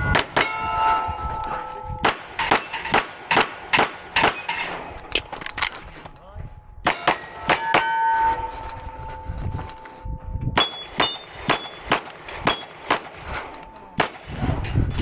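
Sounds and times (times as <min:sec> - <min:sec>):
steel plate ringing: 0:00.0 - 0:05.1, 0:06.8 - 0:10.0, 0:10.6 - 0:11.9
pistol shots: 0:02.0 - 0:04.8, 0:10.6 - 0:13.4, 0:14.0 - 0:14.4.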